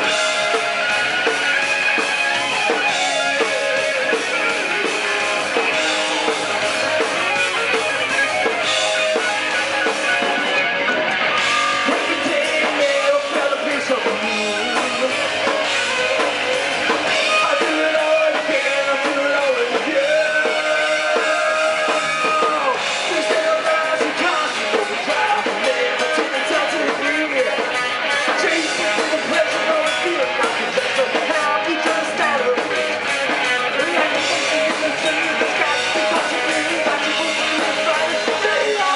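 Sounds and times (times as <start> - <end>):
drum kit: 0.0 - 38.9
electric guitars: 0.0 - 38.9
person singing: 11.4 - 16.3, 17.2 - 38.9.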